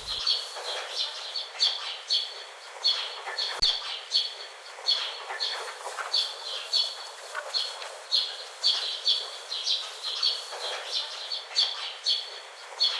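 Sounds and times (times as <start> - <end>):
birds chirping: 0.0 - 1.4.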